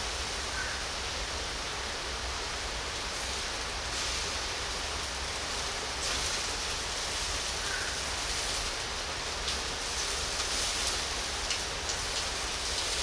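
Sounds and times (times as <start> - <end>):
meat sizzling on a grill: 2.6 - 13.0.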